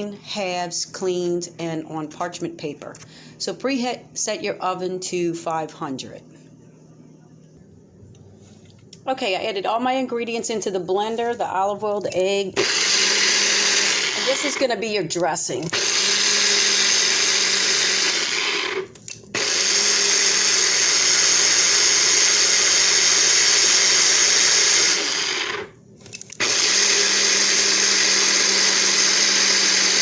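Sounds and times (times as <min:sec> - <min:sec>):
blender motor whirring: 0:12.6 - 0:14.8, 0:15.6 - 0:30.0.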